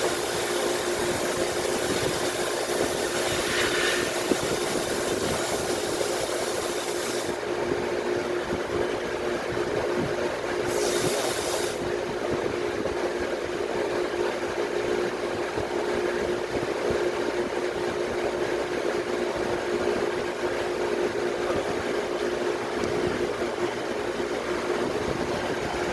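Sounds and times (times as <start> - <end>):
compressed air blast hissing: 0.0 - 7.4, 10.6 - 11.9
sandblasting equipment humming: 0.0 - 7.4, 10.7 - 11.9.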